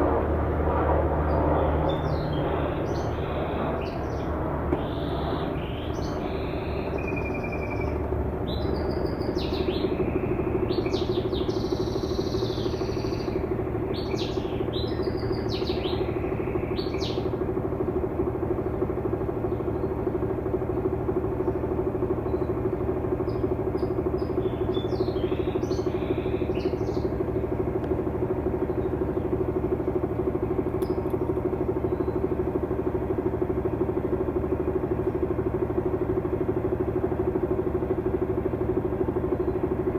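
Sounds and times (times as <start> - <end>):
birds chirping: 24.2 - 27.2
washing machine spinning: 27.2 - 39.9.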